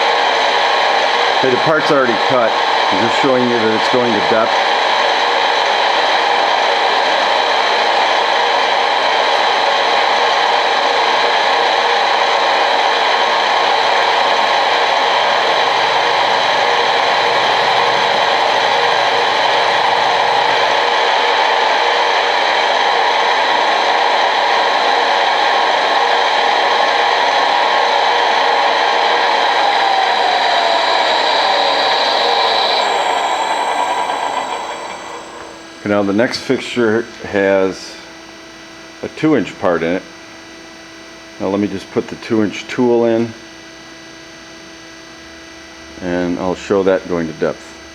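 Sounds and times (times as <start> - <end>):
machine spindle whirring: 0.0 - 37.3.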